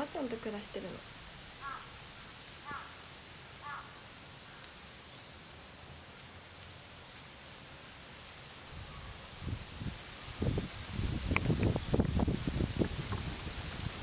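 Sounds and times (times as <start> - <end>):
faint steady background noise: 0.0 - 14.0
crow cawing: 1.6 - 2.0, 2.6 - 3.0, 3.6 - 4.0.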